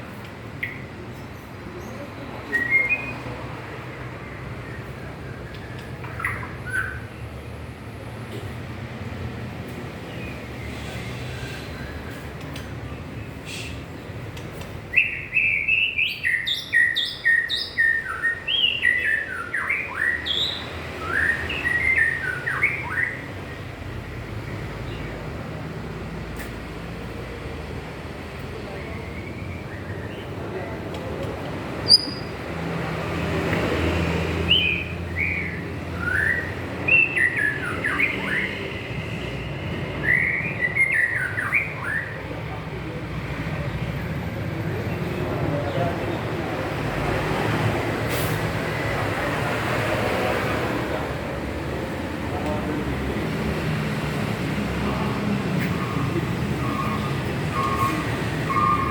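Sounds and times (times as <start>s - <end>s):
songbird singing whistled notes: 1.8s - 3.4s, 14.9s - 23.3s, 31.8s - 32.4s, 34.4s - 38.9s, 40.0s - 42.2s, 55.6s - 58.9s.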